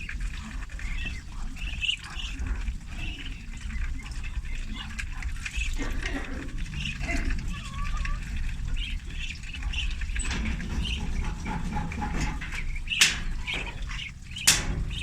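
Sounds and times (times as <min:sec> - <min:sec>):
ducklings peeping: 0:00.0 - 0:15.0
sharp knocks: 0:09.7 - 0:15.0.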